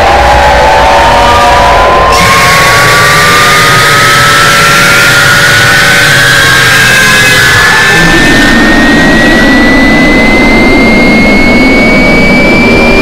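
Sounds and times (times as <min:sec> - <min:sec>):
piercing tone rising in pitch: 0:00.0 - 0:13.0
harsh layered noise: 0:02.0 - 0:13.0.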